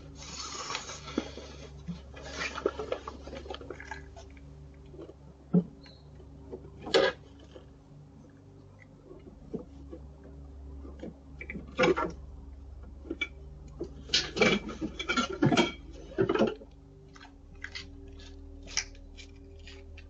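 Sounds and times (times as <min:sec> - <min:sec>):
steady low hum: 0:00.0 - 0:20.0
clattering knocks and scrapes: 0:13.0 - 0:16.8.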